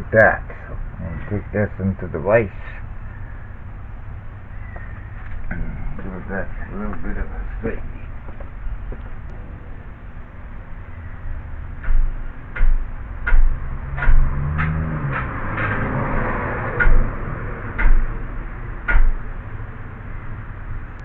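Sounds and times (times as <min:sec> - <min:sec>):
low rumble: 0:02.9 - 0:19.3.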